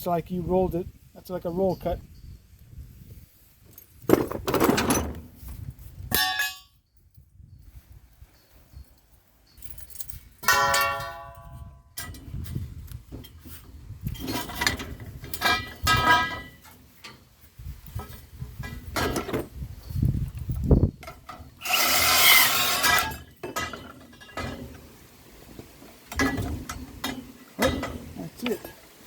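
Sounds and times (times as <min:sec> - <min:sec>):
metal pieces clanking: 0:06.1 - 0:06.7, 0:09.6 - 0:12.2, 0:14.2 - 0:16.7, 0:21.6 - 0:24.8.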